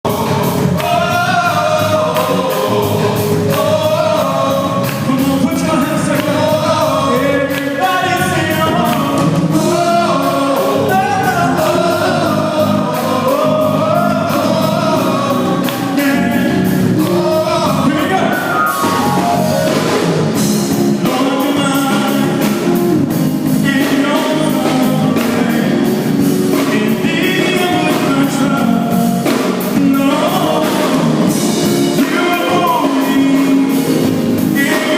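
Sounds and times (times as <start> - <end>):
band playing: 0.0 - 34.9
drums and cymbals: 0.0 - 34.9
man singing lead: 0.0 - 34.9.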